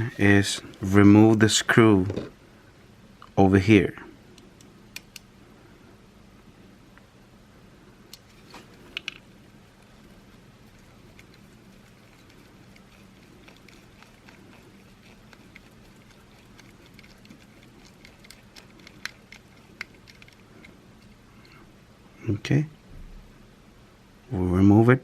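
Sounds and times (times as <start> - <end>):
small screw clicks and ticks: 10.8 - 21.6.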